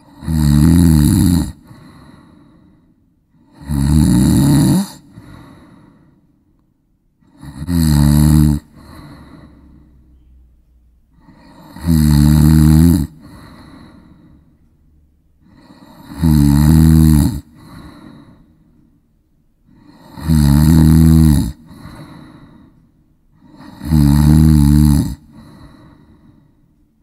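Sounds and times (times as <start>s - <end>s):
person snoring: 0.0s - 6.2s, 7.2s - 10.0s, 11.1s - 14.5s, 15.4s - 18.6s, 19.7s - 22.8s, 23.4s - 26.6s
breathy out-breath: 1.5s - 3.6s, 4.7s - 6.5s, 8.6s - 10.4s, 13.1s - 14.7s, 17.4s - 19.0s, 21.5s - 23.9s, 25.2s - 26.8s.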